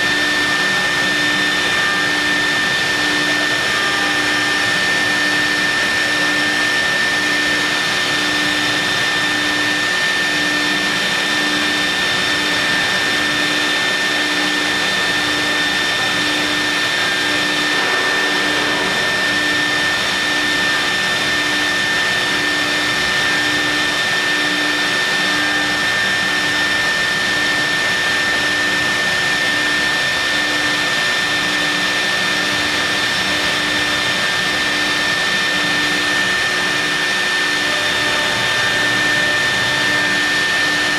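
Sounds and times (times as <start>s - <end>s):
cnc milling machine whine: 0.0s - 40.9s
low pulsing hum: 16.8s - 23.7s.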